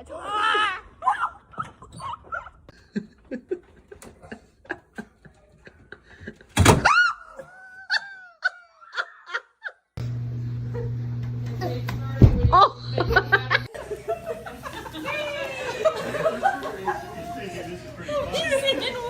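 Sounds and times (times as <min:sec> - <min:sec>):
laughter in choppy bursts: 0:12.5 - 0:17.3.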